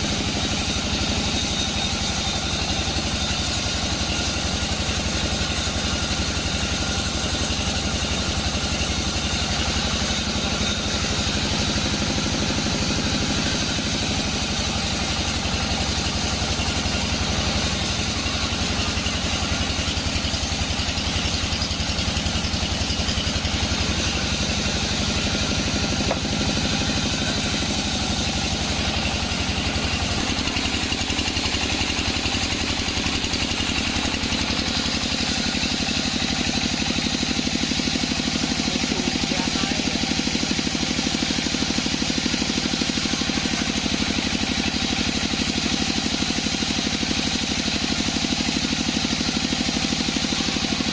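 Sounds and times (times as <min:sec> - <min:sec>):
high machine whine: 0:00.0 - 0:50.9
sawmill engine throbbing: 0:00.0 - 0:50.9.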